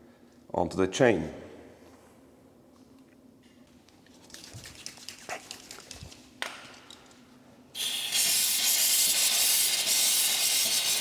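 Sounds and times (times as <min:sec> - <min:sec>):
aerosol can spraying hiss: 0:07.8 - 0:11.0.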